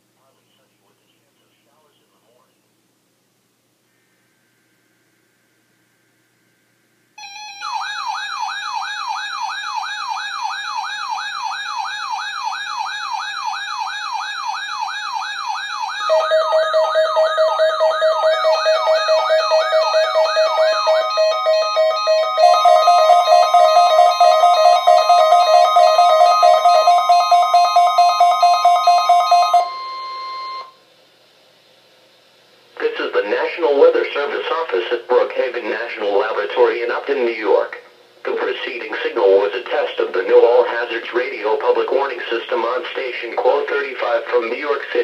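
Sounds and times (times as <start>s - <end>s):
warbling siren-like alarm tone: 7.2s - 30.7s
rapidly pulsing beep: 16.0s - 30.7s.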